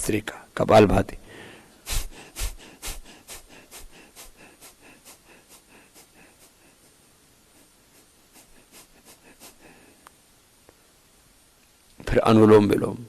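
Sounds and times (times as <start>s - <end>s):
man breathing forcefully: 1.2s - 10.0s.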